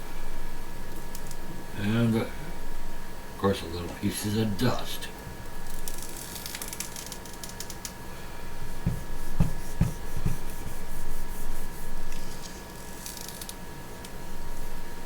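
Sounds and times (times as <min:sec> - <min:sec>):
short dull thumps: 0:08.8 - 0:10.5
scratchy rubbing on glass: 0:08.8 - 0:13.0.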